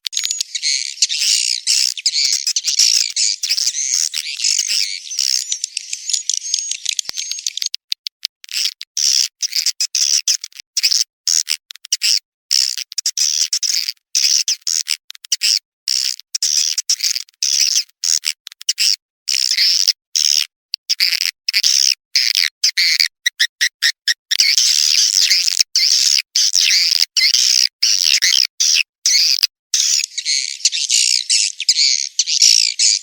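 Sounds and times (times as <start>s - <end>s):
swiftlets twittering: 0.1s - 7.7s.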